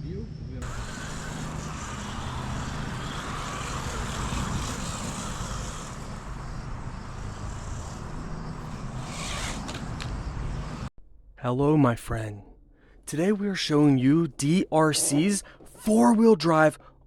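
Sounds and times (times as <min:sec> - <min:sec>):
toy car motor whirring: 0:00.6 - 0:10.9.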